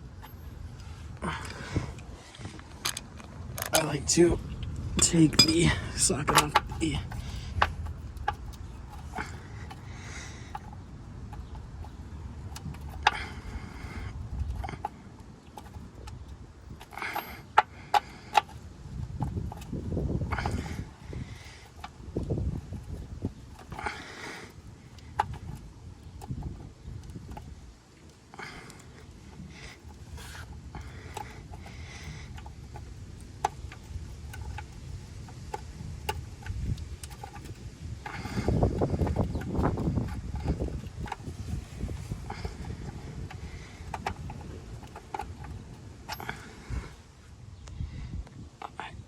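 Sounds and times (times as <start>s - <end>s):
metal tools clinking and scraping: 0.1s - 4.4s, 5.0s - 9.9s, 28.4s - 46.9s
socket wrench clicking: 15.6s - 18.6s, 28.5s - 46.6s.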